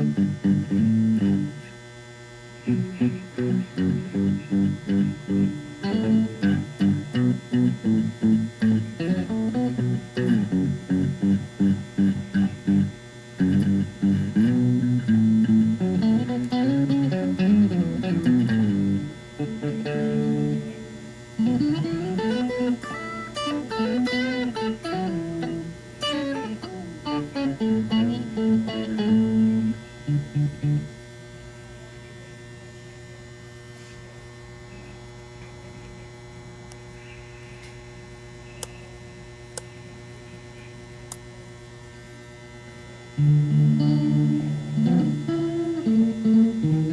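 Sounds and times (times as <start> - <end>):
electric guitar with harmony notes: 0.0 - 1.7, 2.6 - 31.0, 43.1 - 46.9
mains hum: 0.0 - 46.9.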